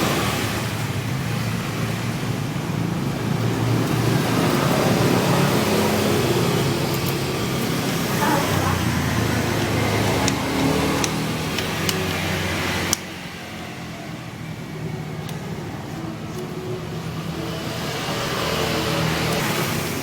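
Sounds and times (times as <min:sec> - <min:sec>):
scooter engine running: 0:00.0 - 0:20.0
sharp clicks: 0:09.5 - 0:13.2.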